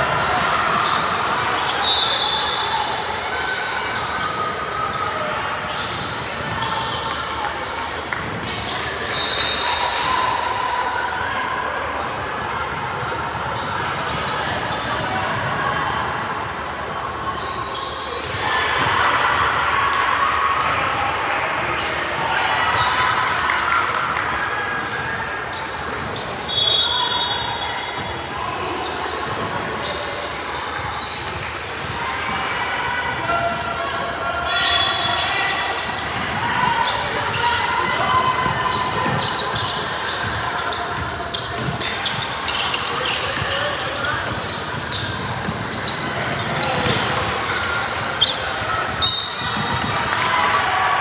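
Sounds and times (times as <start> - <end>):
voices of players and spectators: 0.0 - 51.0
sneaker squeaks: 0.1 - 10.8, 11.6 - 18.9, 21.7 - 51.0
basketball bouncing on court: 35.9 - 50.8.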